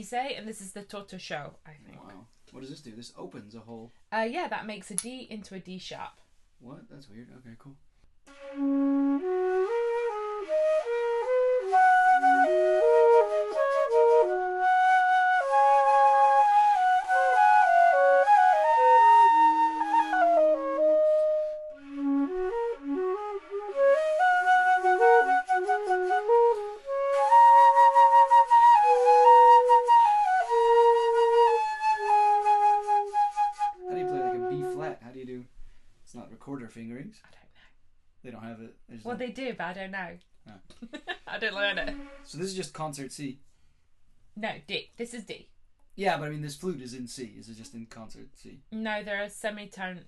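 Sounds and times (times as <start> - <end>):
flutes playing a melody: 8.3 - 35.4, 41.8 - 42.7.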